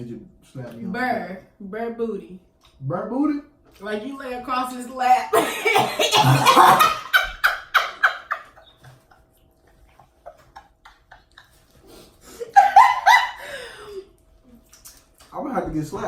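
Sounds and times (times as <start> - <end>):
people laughing: 5.4 - 9.2, 10.0 - 14.0.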